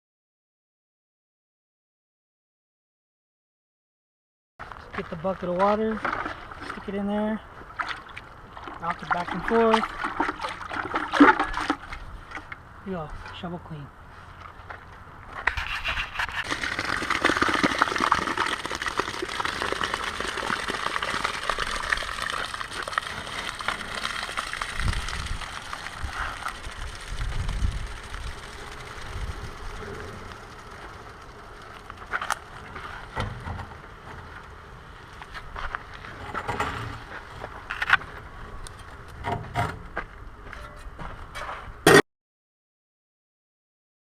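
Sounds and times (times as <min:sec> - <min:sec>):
wet concrete rushing and scraping: 0:04.6 - 0:12.6, 0:15.4 - 0:38.9
knocks and scrapes: 0:14.2 - 0:16.6, 0:32.1 - 0:34.4, 0:35.2 - 0:38.2, 0:38.8 - 0:42.0.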